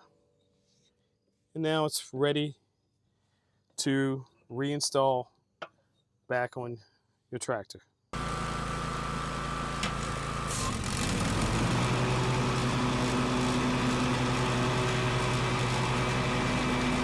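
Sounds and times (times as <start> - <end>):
lawn tractor engine running: 8.2 - 17.0.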